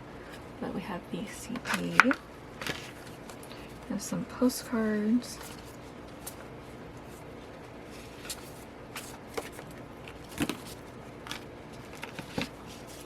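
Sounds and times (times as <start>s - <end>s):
paper taps and rustles: 8.1s - 13.0s.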